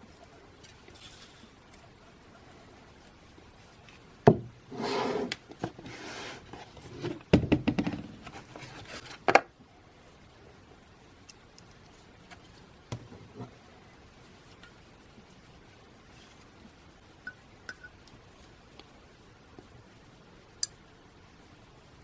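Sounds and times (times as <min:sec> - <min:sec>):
scraping or rustling: 0:00.2 - 0:07.3, 0:08.1 - 0:09.3.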